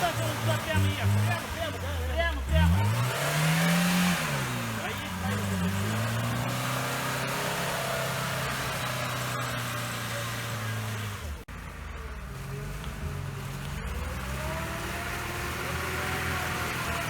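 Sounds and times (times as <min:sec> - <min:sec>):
engine at raised revs: 0:00.0 - 0:17.0
lower engine note: 0:00.0 - 0:17.0.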